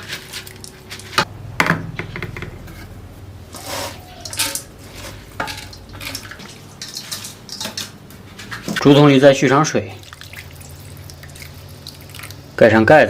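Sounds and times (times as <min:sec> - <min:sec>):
rice grains scraping and rustling: 0:03.5 - 0:05.4.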